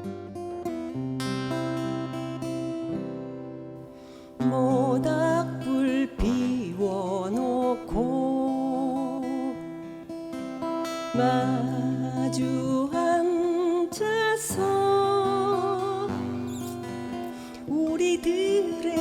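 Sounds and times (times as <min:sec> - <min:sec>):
acoustic guitar strumming chords: 0:00.0 - 0:19.0
person singing with vibrato: 0:04.4 - 0:19.0.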